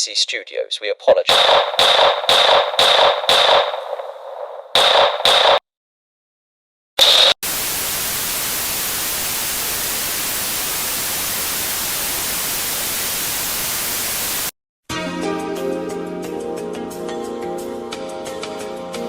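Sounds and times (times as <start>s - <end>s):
white-noise static: 7.0s - 14.5s
harsh broadcast buzz: 7.0s - 14.6s.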